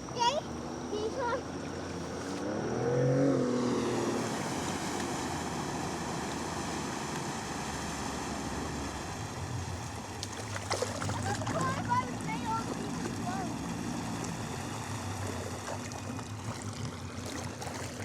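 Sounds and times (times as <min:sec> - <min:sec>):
river water moving: 0:00.0 - 0:18.0
splashes or knocks: 0:09.7 - 0:18.0.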